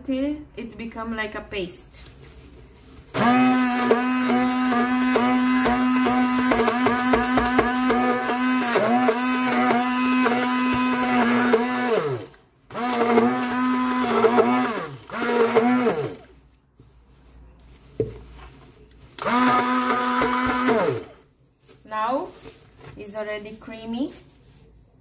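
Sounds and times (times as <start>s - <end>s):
electric blender motor: 3.2s - 16.3s, 19.2s - 21.2s.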